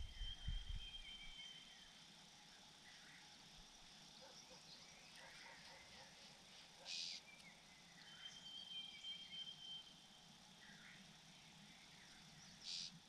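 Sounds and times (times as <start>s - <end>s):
soft bird chirps: 6.8s - 10.0s.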